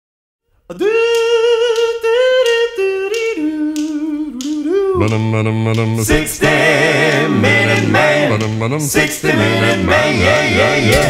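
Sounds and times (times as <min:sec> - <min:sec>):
finger snaps: 0:00.7 - 0:09.2
a cappella group humming: 0:00.7 - 0:11.0.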